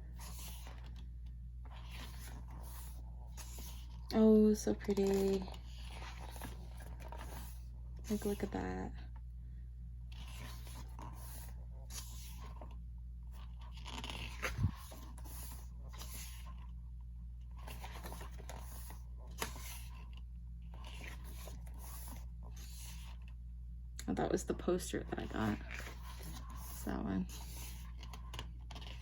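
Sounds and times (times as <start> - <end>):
pages rustling and sliding: 0.0 - 8.6, 10.1 - 16.8, 17.4 - 23.4, 25.0 - 29.0.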